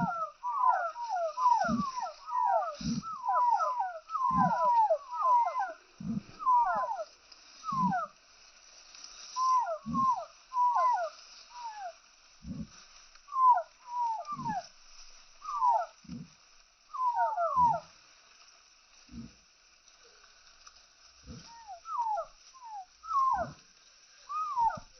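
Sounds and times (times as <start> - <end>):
hen clucking: 0.0 - 7.0, 7.7 - 8.1, 9.4 - 11.9.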